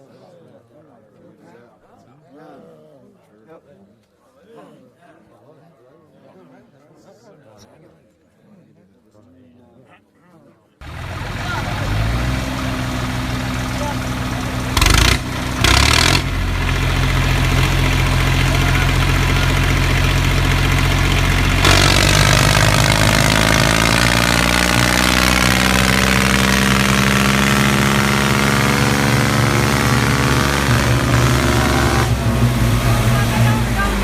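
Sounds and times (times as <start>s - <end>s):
vehicle engine idling: 10.8s - 34.0s.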